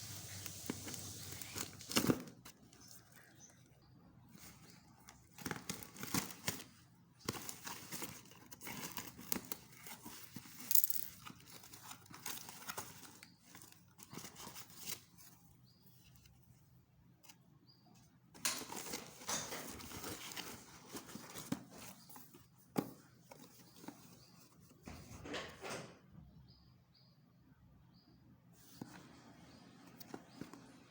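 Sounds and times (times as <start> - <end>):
plastic and cardboard rustling: 0.1 - 3.5, 4.3 - 16.5, 18.4 - 25.1.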